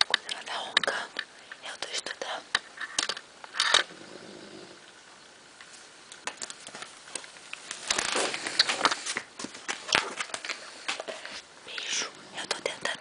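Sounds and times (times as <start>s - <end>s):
person snoring: 3.8s - 4.8s.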